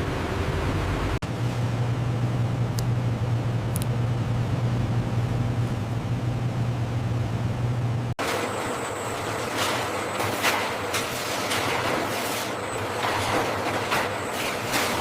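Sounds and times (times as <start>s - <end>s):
hissing mechanical noise: 0.0s - 15.0s.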